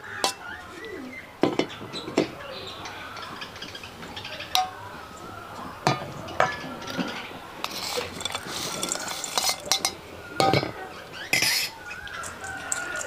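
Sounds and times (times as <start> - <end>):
scraping and stirring in bowl: 5.8 - 13.0
utensil clinking against bowl: 5.9 - 13.0.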